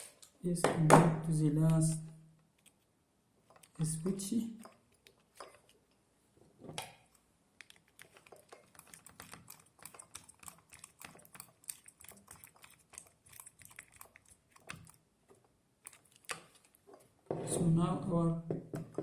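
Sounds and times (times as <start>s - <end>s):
small clicks and ticks: 6.9s - 17.1s.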